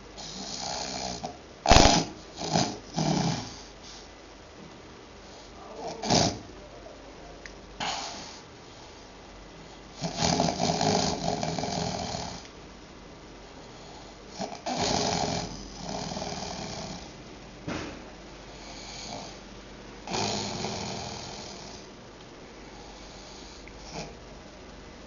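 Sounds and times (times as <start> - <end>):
person snoring loudly: 0.2 - 3.6, 5.7 - 6.5, 10.0 - 12.5, 14.3 - 17.1, 20.1 - 21.9.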